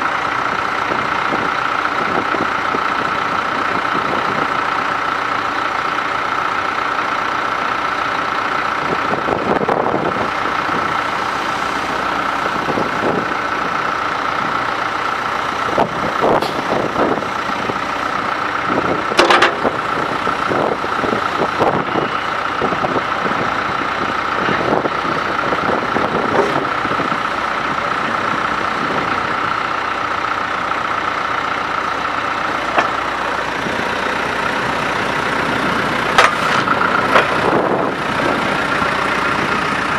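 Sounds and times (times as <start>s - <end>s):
constant whine: 0.0s - 39.9s
diesel engine running: 0.0s - 39.9s
metal clanks and knocks: 19.1s - 19.8s.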